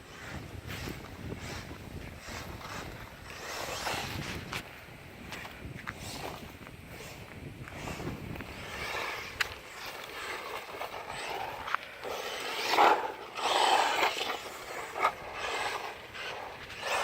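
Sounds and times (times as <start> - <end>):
rc truck motor and tyres rushing: 0.0 - 17.0.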